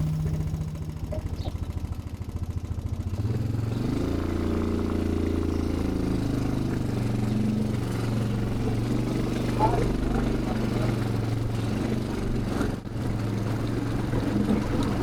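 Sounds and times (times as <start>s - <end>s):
atv engine idling and revving: 0.0s - 15.0s.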